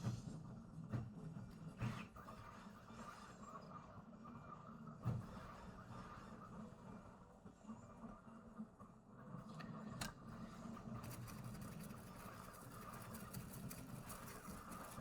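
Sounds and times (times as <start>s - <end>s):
brush scrubbing circuit board: 11.0s - 15.0s.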